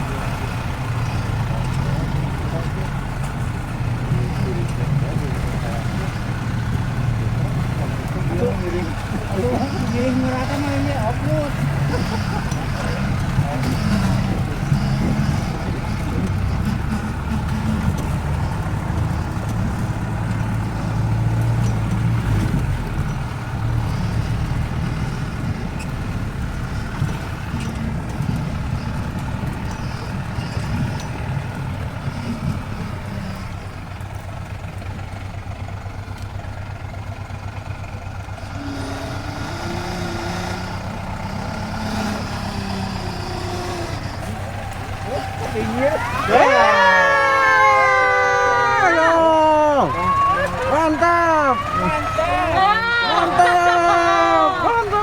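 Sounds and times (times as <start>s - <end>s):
off-road vehicle engine rumble: 0.0s - 55.0s.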